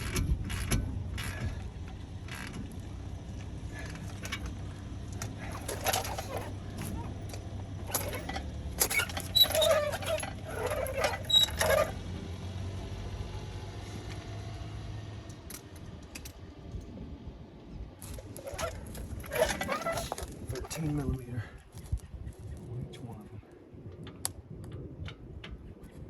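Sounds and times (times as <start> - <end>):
metal hand tools clinking: 5.4 - 11.9.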